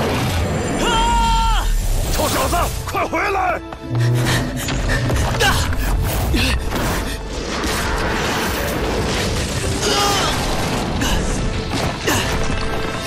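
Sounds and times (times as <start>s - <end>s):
background music: 0.0s - 13.0s
crashing and heavy impacts: 6.0s - 13.0s.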